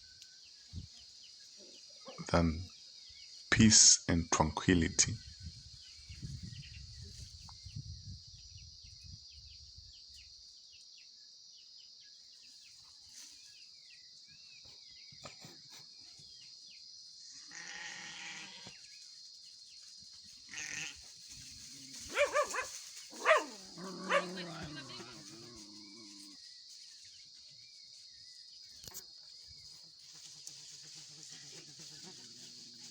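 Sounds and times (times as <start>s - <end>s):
high insect drone: 14.8s - 32.9s
goat bleating: 17.5s - 18.7s, 20.5s - 21.0s, 23.8s - 25.6s
short animal calls: 20.5s - 21.0s, 22.0s - 26.3s.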